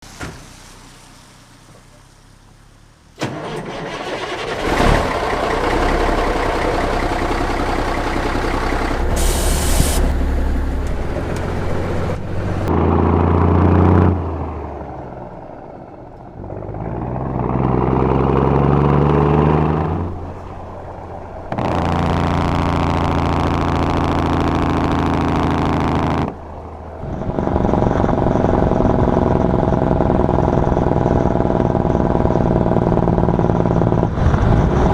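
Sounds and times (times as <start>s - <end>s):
loud diesel truck engine: 0.0s - 34.9s
engine brake: 3.2s - 12.7s
air hiss: 9.0s - 10.2s.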